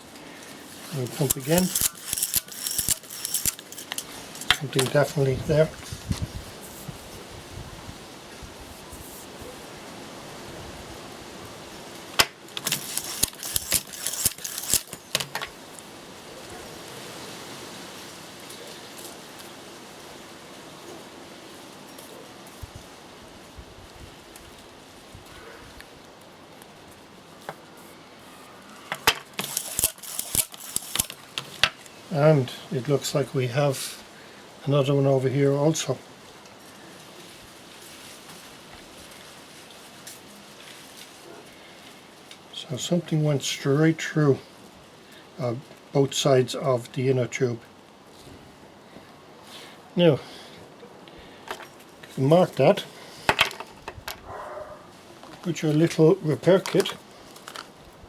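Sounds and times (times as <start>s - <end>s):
steady background hiss: 0.0s - 54.1s, 54.7s - 58.0s
sharp clicks and rattles: 0.9s - 5.1s, 12.2s - 15.6s, 28.9s - 31.8s.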